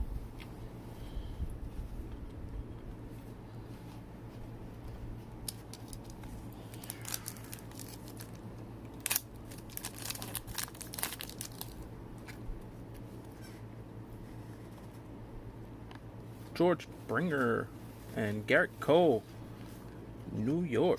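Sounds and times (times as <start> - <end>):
plastic wrapper crinkling: 5.4 - 12.4.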